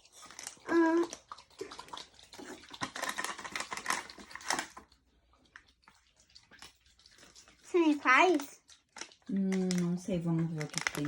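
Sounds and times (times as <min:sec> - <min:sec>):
packaging rustling: 0:02.8 - 0:04.8, 0:09.0 - 0:11.0
plastic toy parts clicking: 0:09.0 - 0:11.0.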